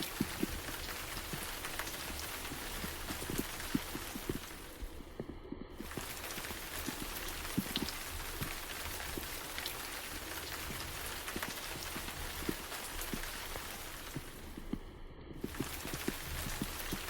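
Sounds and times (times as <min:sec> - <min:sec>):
rain drops on hard surface: 0:00.0 - 0:17.0.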